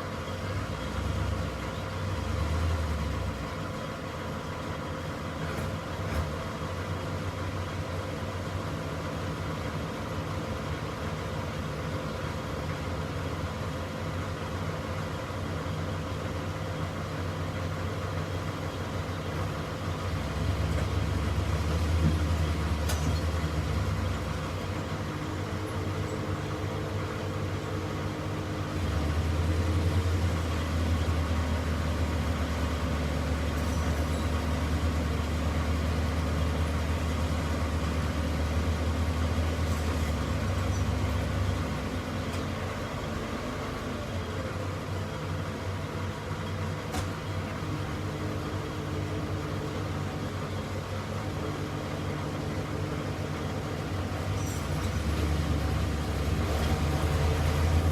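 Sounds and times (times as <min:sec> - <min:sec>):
heavy diesel engine running: 0:00.0 - 0:57.9.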